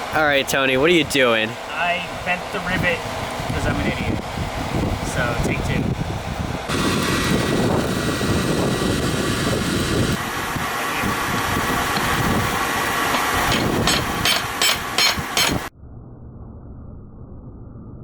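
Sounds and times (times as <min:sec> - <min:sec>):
steady rushing noise: 0:00.0 - 0:15.7
hammer blows on metal: 0:13.1 - 0:15.7.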